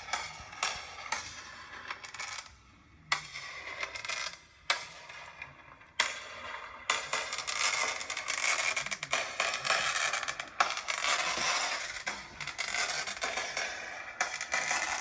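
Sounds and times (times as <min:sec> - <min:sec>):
fireworks crackling: 0:00.0 - 0:01.1, 0:08.3 - 0:13.6.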